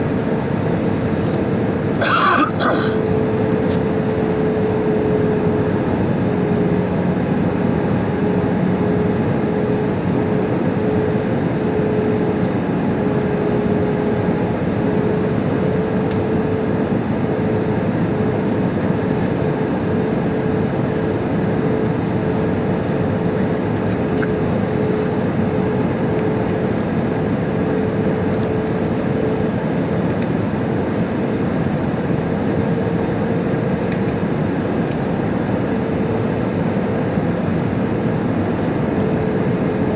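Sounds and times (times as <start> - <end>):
airplane cabin noise: 0.0 - 39.9
constant hum: 0.0 - 39.9.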